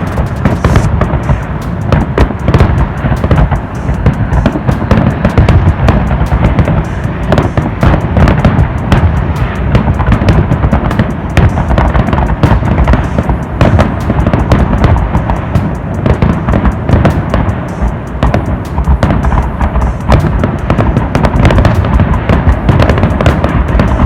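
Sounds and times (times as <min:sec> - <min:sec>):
fireworks crackling and popping: 0:00.0 - 0:24.0.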